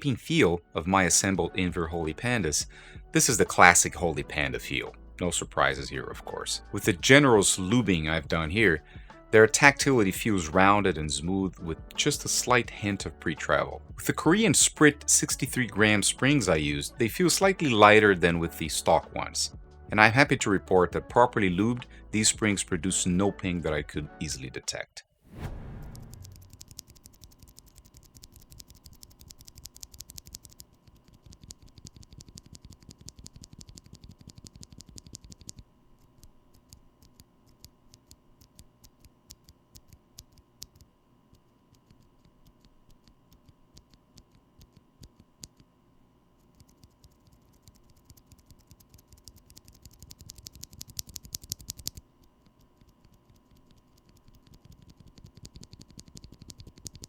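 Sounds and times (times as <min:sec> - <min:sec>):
mechanical keyboard typing: 0:26.2 - 0:45.6, 0:46.4 - 0:57.0.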